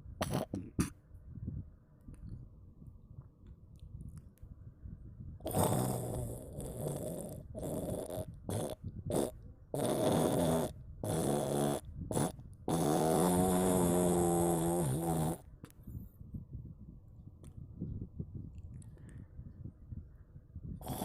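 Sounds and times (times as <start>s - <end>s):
cat snoring: 5.4s - 15.4s, 20.8s - 21.0s.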